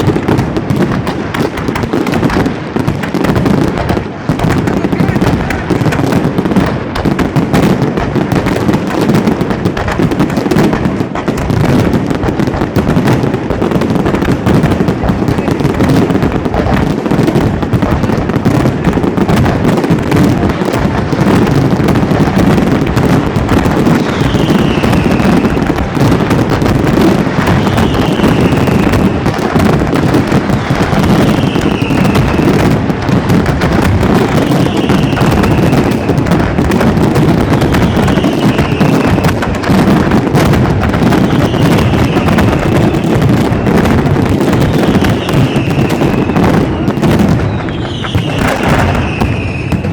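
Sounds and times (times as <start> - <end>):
fireworks bangs and crackling: 0.0 - 49.9
falling whistle: 47.5 - 49.8.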